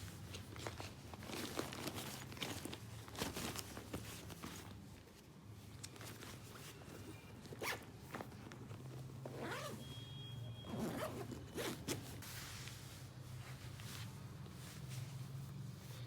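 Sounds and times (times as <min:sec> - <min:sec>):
fabric rustling: 0:00.0 - 0:09.8, 0:10.8 - 0:16.0
zipper being pulled: 0:09.3 - 0:09.8, 0:10.7 - 0:12.1.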